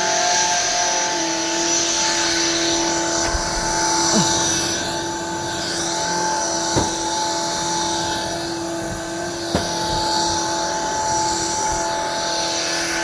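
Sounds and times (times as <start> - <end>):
stick vacuum cleaner running: 0.0 - 13.0
sharp knocks: 6.7 - 7.5, 8.9 - 10.4.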